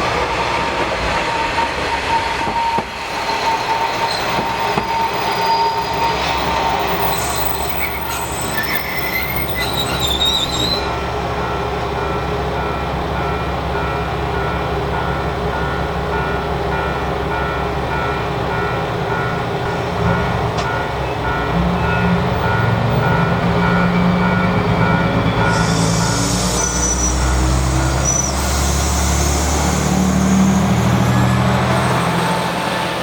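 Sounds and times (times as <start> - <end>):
train wheels squealing: 1.1 - 11.0, 20.7 - 33.0.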